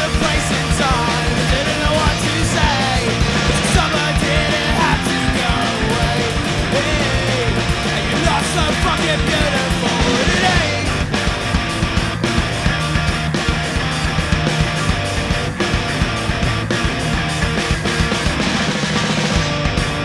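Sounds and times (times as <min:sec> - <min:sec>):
driving drums: 0:00.0 - 0:20.0
punk rock band playing: 0:00.0 - 0:20.0.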